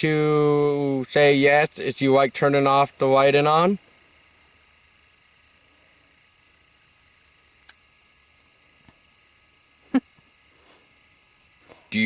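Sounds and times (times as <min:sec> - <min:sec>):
crickets chirring: 0:00.0 - 0:12.0
faint ticks: 0:07.6 - 0:07.9.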